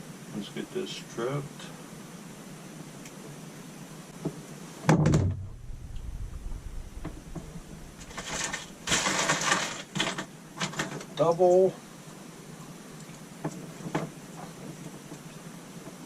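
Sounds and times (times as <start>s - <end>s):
sharp thump: 4.9s - 7.8s
wire insulation scraping: 5.1s - 11.1s.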